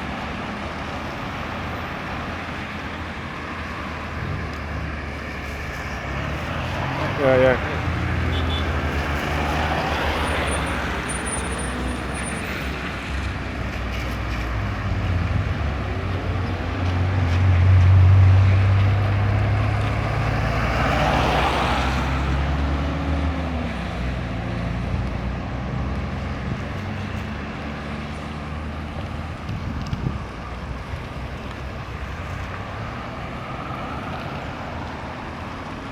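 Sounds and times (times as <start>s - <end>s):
road traffic passing: 0.0s - 35.9s
vehicle sweeping past close by: 4.8s - 29.0s.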